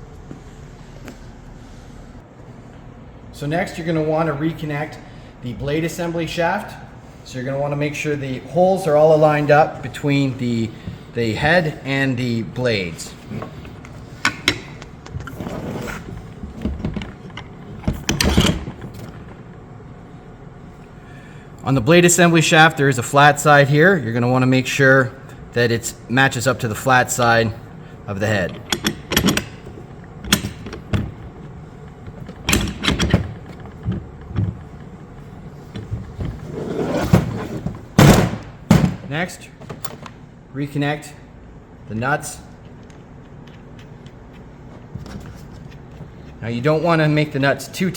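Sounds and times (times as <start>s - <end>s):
metal parts clicking and knocking: 28.3s - 31.2s, 32.1s - 34.6s.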